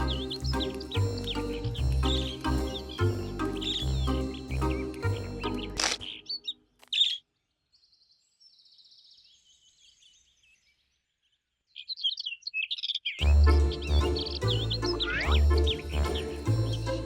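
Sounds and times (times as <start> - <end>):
music: 0.0 - 6.2, 13.2 - 17.0
cartoon bird trill and chirps: 0.0 - 7.2, 12.1 - 17.0.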